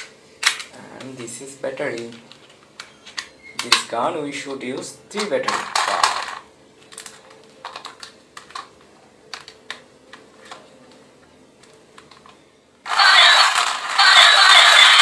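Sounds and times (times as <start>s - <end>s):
harsh noise from toy gun: 12.9s - 15.0s.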